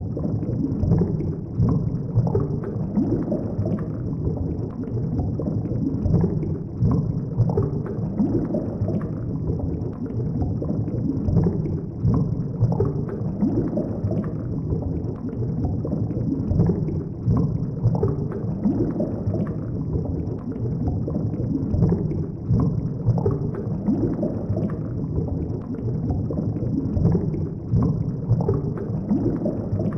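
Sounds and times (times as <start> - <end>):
underwater rumbling wash: 0.0 - 29.9.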